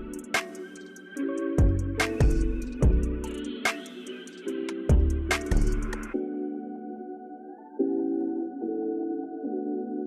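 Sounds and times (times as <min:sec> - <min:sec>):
bass-heavy beat with percussion: 0:01.6 - 0:03.5, 0:04.9 - 0:06.2.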